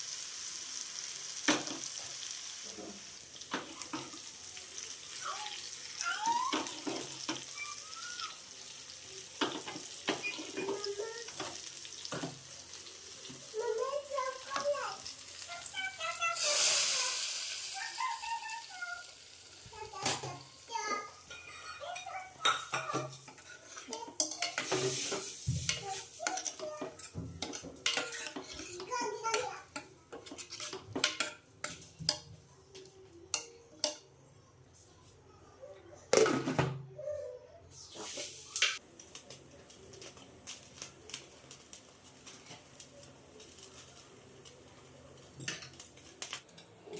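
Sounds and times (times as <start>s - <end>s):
frying hiss: 0.0s - 35.1s, 37.7s - 46.9s
metal spoon scraping a pot: 23.1s - 29.0s, 30.2s - 32.2s.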